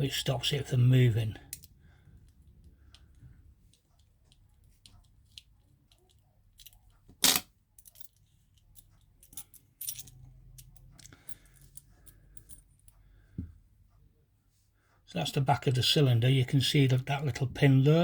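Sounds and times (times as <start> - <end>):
small metal lock parts clicking: 1.5 - 1.8, 2.9 - 12.6.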